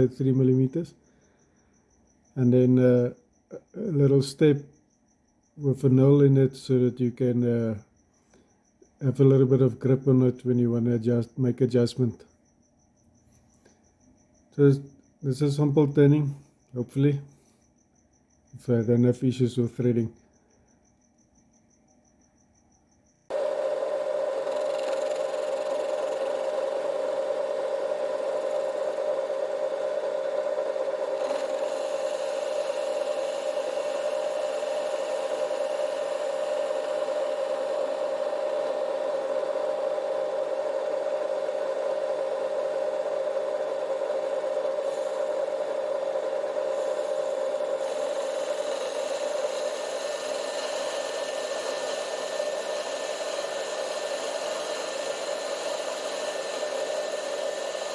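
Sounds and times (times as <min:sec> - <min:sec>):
metal lathe gear whine: 0:00.0 - 0:00.8, 0:23.3 - 0:57.9.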